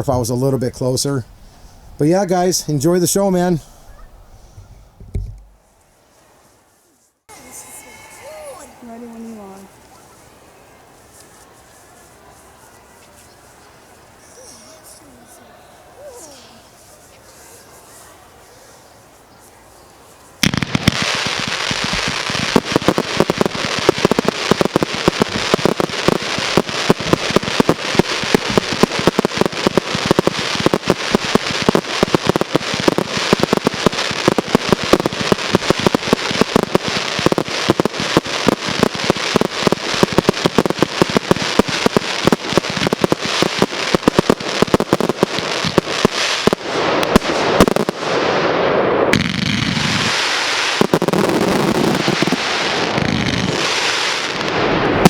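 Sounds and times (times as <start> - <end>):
fireworks popping and banging: 20.4 - 55.0.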